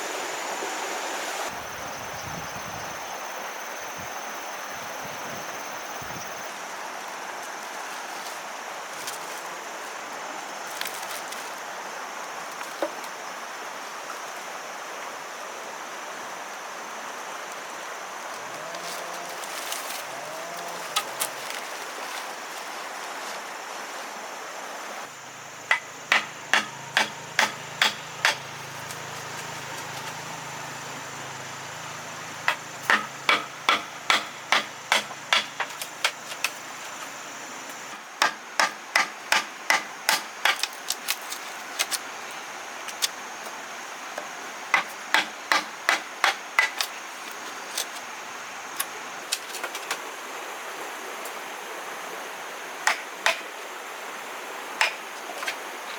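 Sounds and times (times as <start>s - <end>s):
hand tool striking bamboo: 25.7s - 30.0s, 32.5s - 36.6s, 38.2s - 42.0s, 44.7s - 48.0s, 52.9s - 53.5s, 54.8s - 55.6s.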